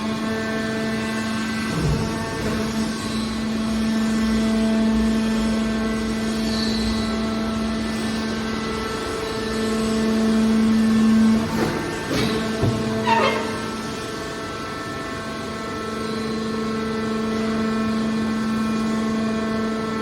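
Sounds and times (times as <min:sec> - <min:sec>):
baler machine hum-whine: 0:00.0 - 0:20.0
creaks and knocks: 0:11.4 - 0:14.0.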